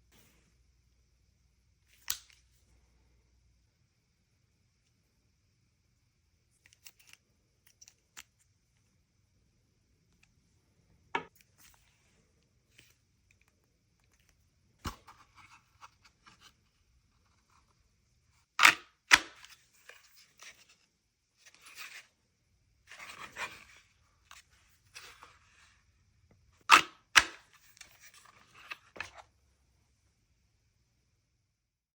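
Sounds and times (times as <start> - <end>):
rustling and scraping: 22.9 - 25.8.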